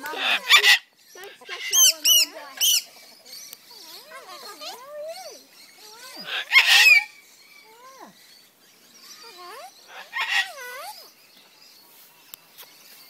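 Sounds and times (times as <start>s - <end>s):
parrots squawking: 0.0s - 11.2s
parrot harsh screech: 5.9s - 7.2s.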